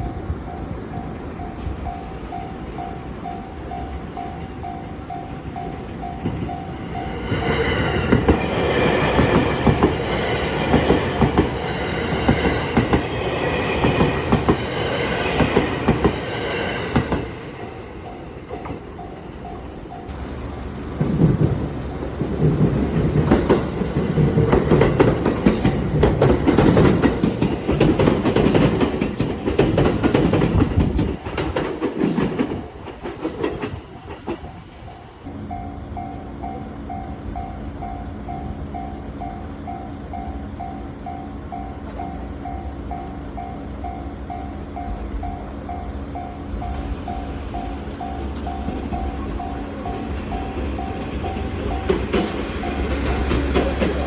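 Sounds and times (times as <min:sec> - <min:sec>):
train wheels clacking over rail joints: 0:07.3 - 0:17.4, 0:20.9 - 0:34.7, 0:46.6 - 0:54.0.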